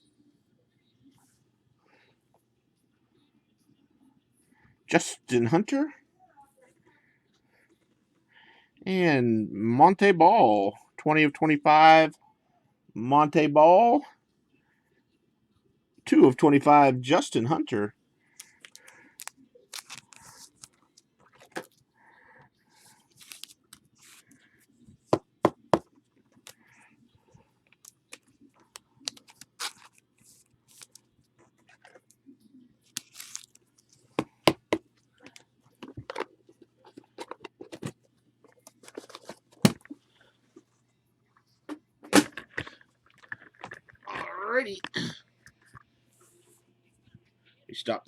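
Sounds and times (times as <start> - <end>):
plastic crinkling: 18.3 - 21.8, 23.0 - 24.4, 27.7 - 32.1, 32.8 - 34.4
cards and plastic clicking: 18.4 - 21.8, 27.7 - 30.1, 32.9 - 40.0
cards scraping: 18.5 - 21.7, 28.1 - 32.1, 32.9 - 34.7.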